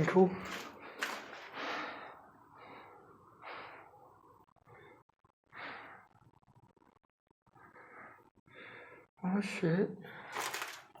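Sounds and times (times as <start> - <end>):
man breathing heavily: 0.4 - 6.4, 7.5 - 9.1.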